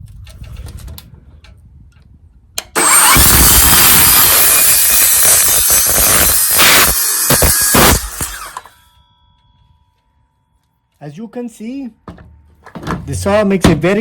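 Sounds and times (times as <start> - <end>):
circular saw cutting: 2.8 - 8.8.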